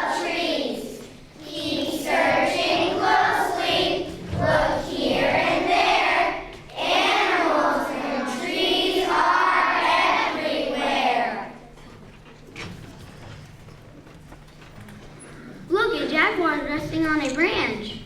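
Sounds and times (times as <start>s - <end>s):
children singing: 0.0s - 11.6s.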